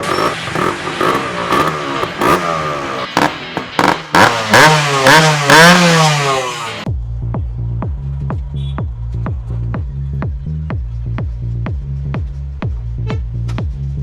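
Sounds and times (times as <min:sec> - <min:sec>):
motorcycle engine revving: 0:00.0 - 0:13.8
exhaust cracks: 0:00.0 - 0:14.0.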